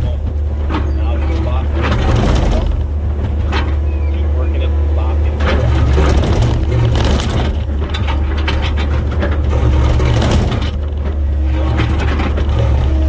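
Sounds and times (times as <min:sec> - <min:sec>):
excavator diesel engine running: 0:00.0 - 0:13.0
bucket scraping and knocking on rock: 0:05.3 - 0:13.0.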